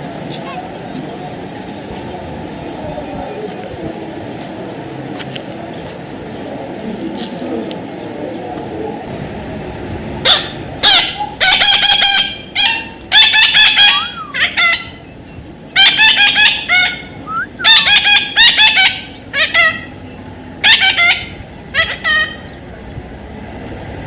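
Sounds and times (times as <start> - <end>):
parrot squawking: 10.2 - 15.1, 15.7 - 22.6.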